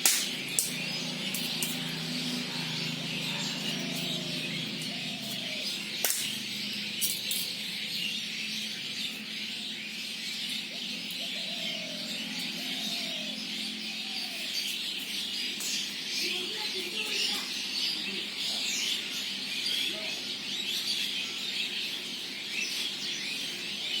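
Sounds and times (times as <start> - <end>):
birds chirping and calling: 0.0 - 24.0
sharp clicks: 6.0 - 6.4.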